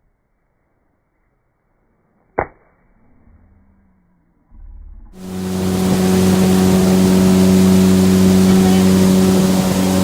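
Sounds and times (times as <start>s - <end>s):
boat motor humming: 5.2s - 10.0s
wind and water hissing: 5.2s - 10.0s.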